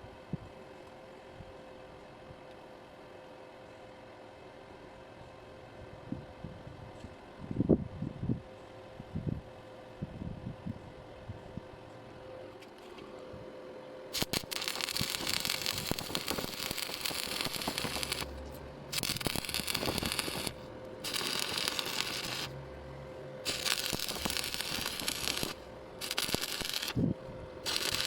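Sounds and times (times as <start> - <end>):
steady low hum: 2.7 - 28.0
welding arc crackling: 14.2 - 22.6, 23.4 - 28.0.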